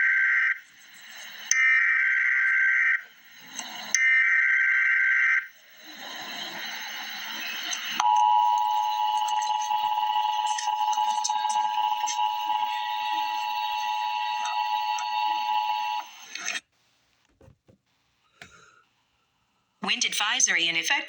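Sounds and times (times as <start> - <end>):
digital data tone bursts: 4.8 - 16.3
two-tone attention signal: 8.0 - 16.1.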